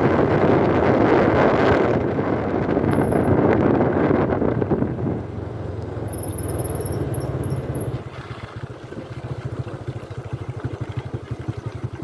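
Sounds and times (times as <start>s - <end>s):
diesel engine chugging: 4.6s - 12.0s.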